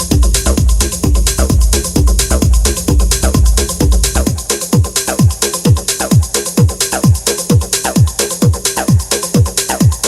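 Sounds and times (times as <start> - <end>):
deep sustained bass: 0.0 - 4.4
electronic dance music: 0.0 - 10.0
kick drum: 0.0 - 10.0.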